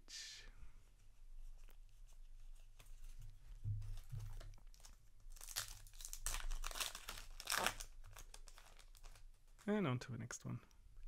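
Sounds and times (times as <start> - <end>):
foil wrapper crinkling: 4.0 - 9.8.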